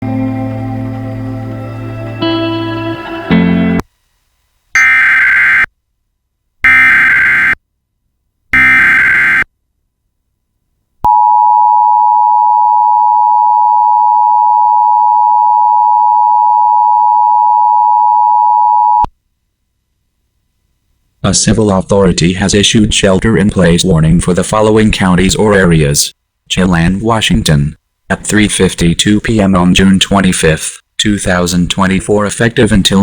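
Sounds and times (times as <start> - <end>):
digital header data bursts: 6.7 - 7.6, 8.6 - 9.4
two-tone attention signal: 8.6 - 9.4.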